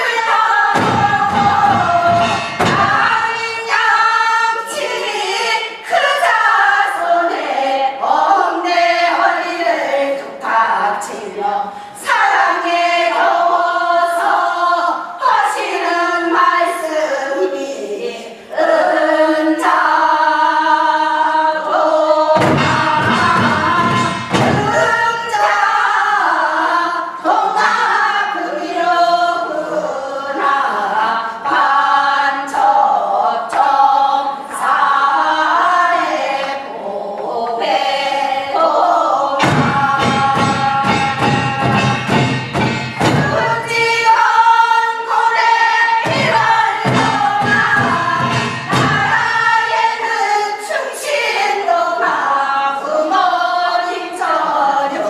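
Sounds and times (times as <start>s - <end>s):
drum strokes: 0.0s - 4.9s, 21.7s - 29.8s, 39.4s - 50.1s
group of voices singing: 0.0s - 55.0s.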